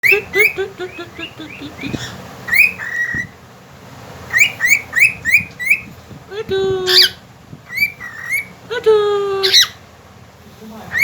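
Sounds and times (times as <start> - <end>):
cockatiel whistling: 1.2 - 3.4, 4.3 - 5.9, 6.9 - 8.5.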